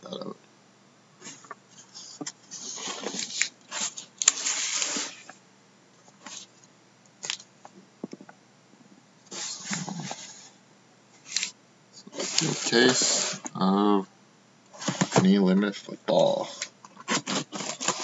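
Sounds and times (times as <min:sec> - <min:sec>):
cardboard rustling and scraping: 0:01.2 - 0:05.4, 0:09.3 - 0:10.5, 0:12.1 - 0:13.5, 0:14.8 - 0:15.3, 0:16.9 - 0:18.0.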